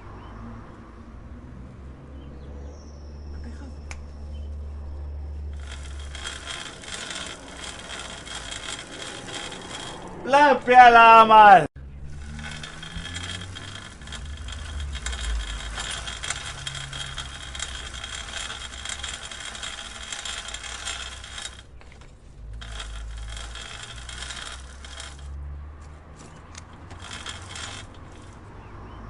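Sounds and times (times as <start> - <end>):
bicycle chain clicking: 5.6 - 10.8, 12.0 - 28.5.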